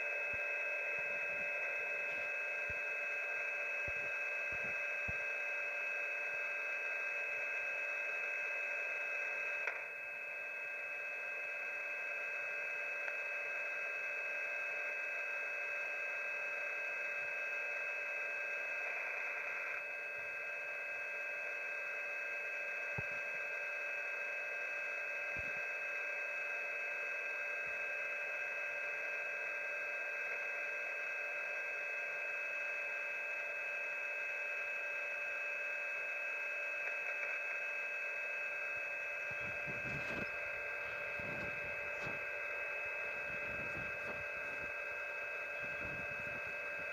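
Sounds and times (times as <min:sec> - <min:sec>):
radio band noise hiss: 0:00.0 - 0:46.9
radio click: 0:09.5 - 0:09.9, 0:36.8 - 0:37.6, 0:39.2 - 0:46.9.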